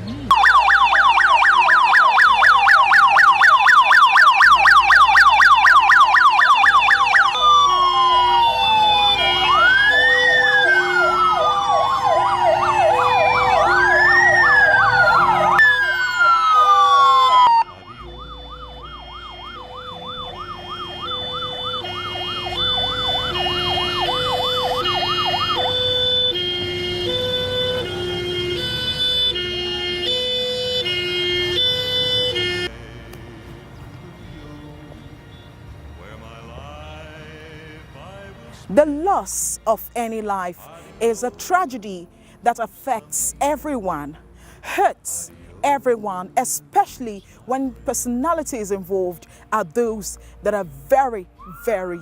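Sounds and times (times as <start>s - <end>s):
electronic siren: 0.3s - 32.7s.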